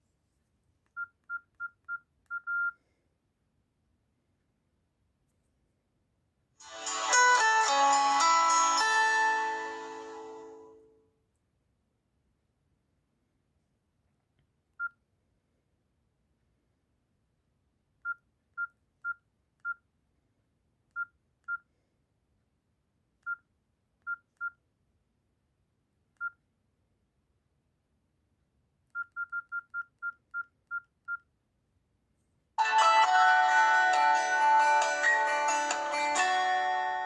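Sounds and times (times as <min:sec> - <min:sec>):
phone keypad beeps: 0:01.0 - 0:02.8, 0:29.0 - 0:31.2
melodic ringtone: 0:06.6 - 0:10.8, 0:32.6 - 0:37.0.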